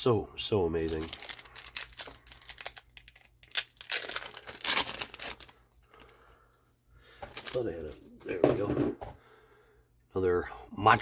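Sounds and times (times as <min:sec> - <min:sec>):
wrapper tearing and crinkling: 0:00.8 - 0:06.1.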